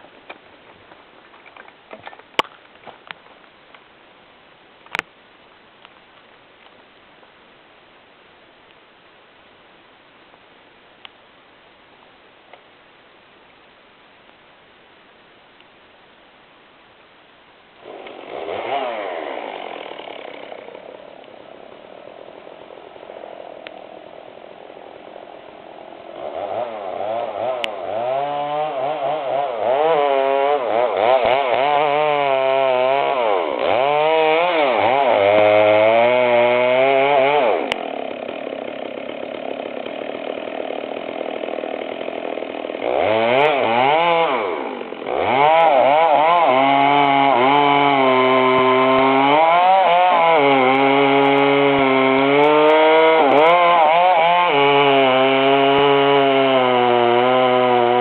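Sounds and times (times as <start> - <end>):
chainsaw revving: 17.8 - 21.2, 26.0 - 58.0.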